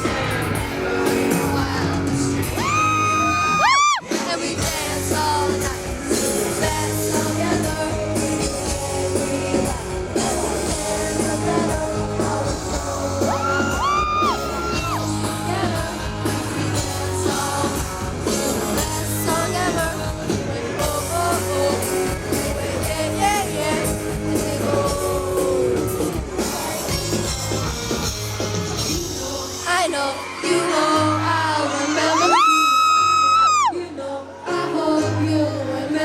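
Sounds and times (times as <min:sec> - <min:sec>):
crowd screaming: 0:00.0 - 0:04.4, 0:12.4 - 0:19.2, 0:22.6 - 0:28.0, 0:28.8 - 0:34.0
live pop-rock band with singing: 0:00.0 - 0:36.0.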